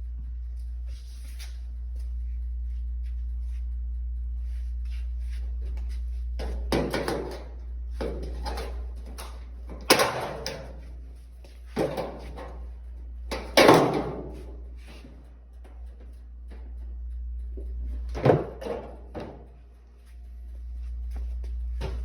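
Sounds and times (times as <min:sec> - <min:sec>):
steady low hum: 0:00.0 - 0:22.0
parts knocking and scraping: 0:06.4 - 0:16.9.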